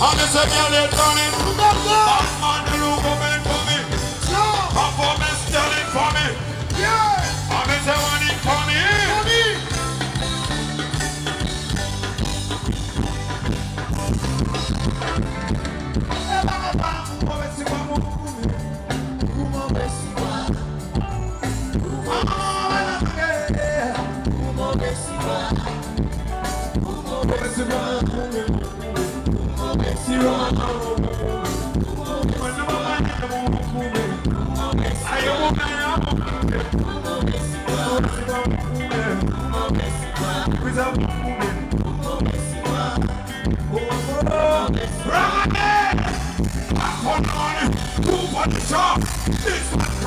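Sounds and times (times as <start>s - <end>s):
person singing: 0.0s - 10.6s, 16.1s - 50.0s
drums and bass beat: 0.0s - 50.0s.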